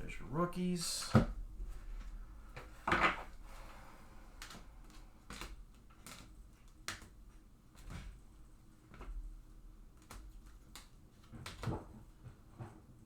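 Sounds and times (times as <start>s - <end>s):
cards clicking and tapping on table: 5.3s - 7.2s.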